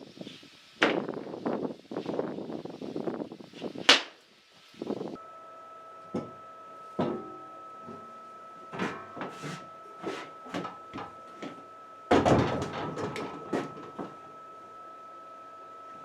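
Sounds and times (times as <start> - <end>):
faint steady high tone: 5.2 - 16.0
building materials clattering: 8.7 - 14.2.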